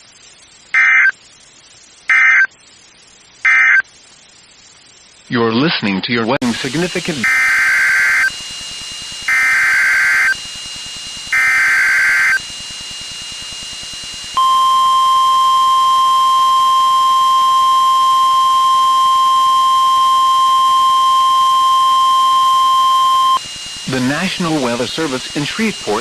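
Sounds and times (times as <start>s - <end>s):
warbling data-tone bursts: 0.7s - 1.2s, 2.1s - 2.5s, 3.4s - 3.8s, 6.4s - 26.0s
steady warning alarm tone: 6.4s - 26.0s.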